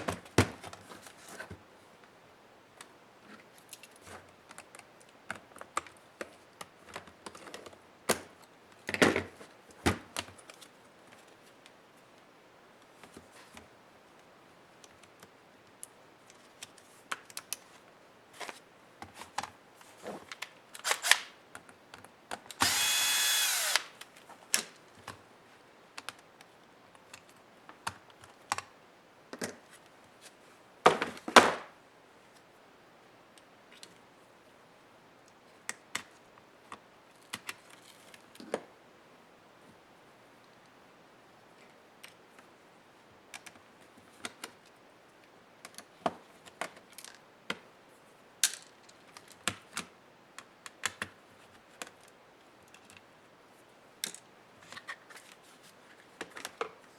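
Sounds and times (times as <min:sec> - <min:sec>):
electric screwdriver running: 0:22.6 - 0:24.0.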